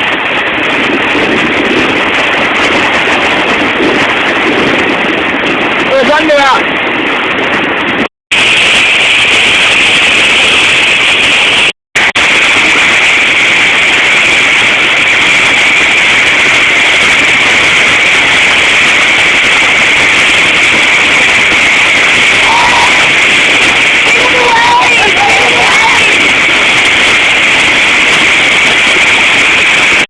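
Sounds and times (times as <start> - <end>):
turbulent water rushing: 0.0 - 30.0.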